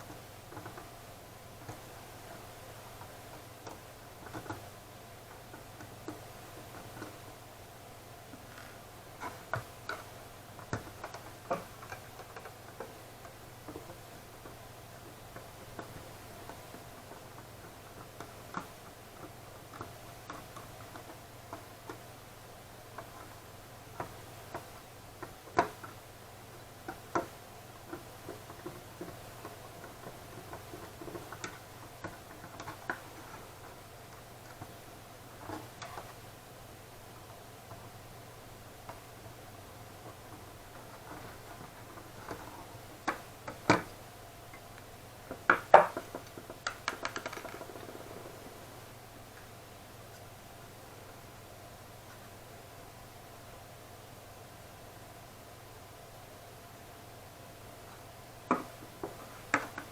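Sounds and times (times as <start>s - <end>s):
small clicks and taps of tools: 0.0s - 0.9s, 2.9s - 7.3s, 8.3s - 22.1s, 23.0s - 34.8s, 40.0s - 48.0s
steady low hum: 0.0s - 59.9s.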